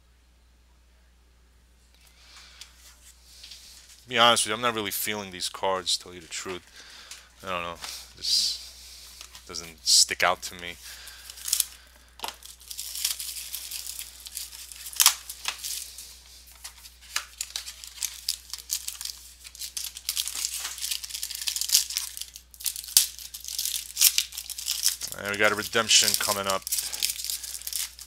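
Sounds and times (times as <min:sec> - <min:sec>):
packaging torn and crinkled: 0:10.6 - 0:28.0.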